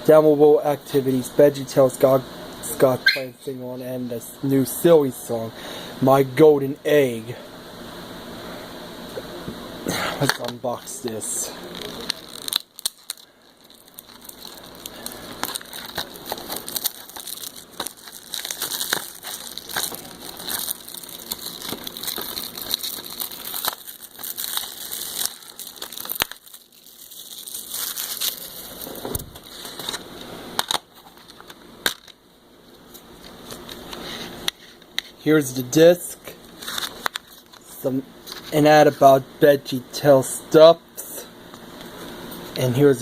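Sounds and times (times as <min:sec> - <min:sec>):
plastic wrap crinkling: 0:10.2 - 0:32.2, 0:36.5 - 0:37.6.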